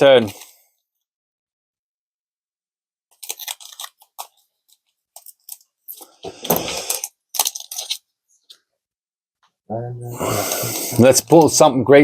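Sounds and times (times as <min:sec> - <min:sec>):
foil wrapper crinkling and tearing: 0:03.1 - 0:08.1.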